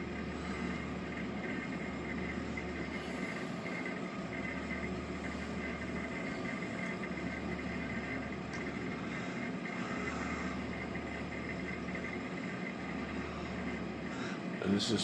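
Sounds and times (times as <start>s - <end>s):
air conditioner humming: 0.0s - 15.0s.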